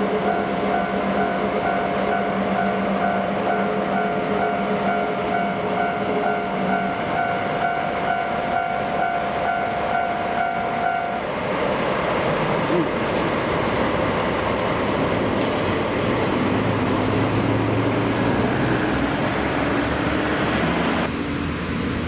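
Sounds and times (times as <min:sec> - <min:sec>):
level-crossing warning bell: 0:00.0 - 0:11.4
freight train rumbling on rails: 0:00.0 - 0:22.0.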